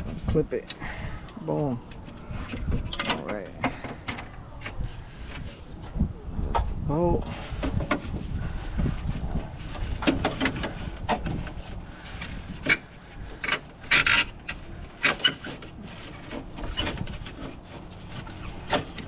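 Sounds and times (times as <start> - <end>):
hard parts clicking and knocking: 0.0 - 5.5, 10.0 - 19.0
hard parts scraping: 0.0 - 19.0.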